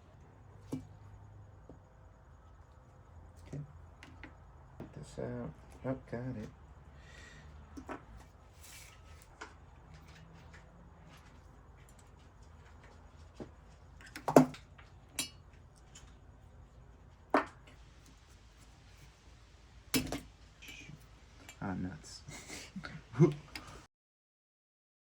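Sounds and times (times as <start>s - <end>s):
metal parts and tools clinking: 14.0s - 16.2s, 20.0s - 20.3s.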